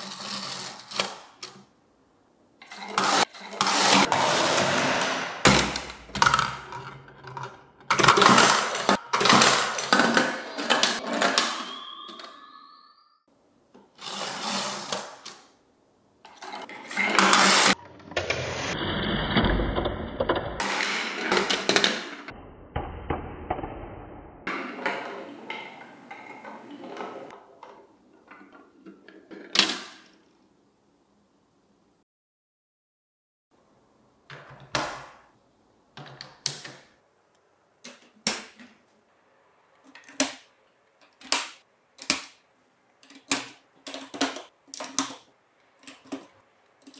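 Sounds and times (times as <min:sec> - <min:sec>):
marbles rolling through plastic track: 0:00.0 - 0:01.2
steady high tones: 0:10.5 - 0:13.3.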